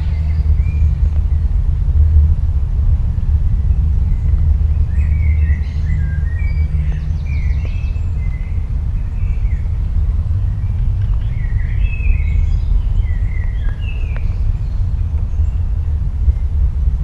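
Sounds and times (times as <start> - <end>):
loud low rumble: 0.0 - 17.0
birds chirping: 4.0 - 16.5.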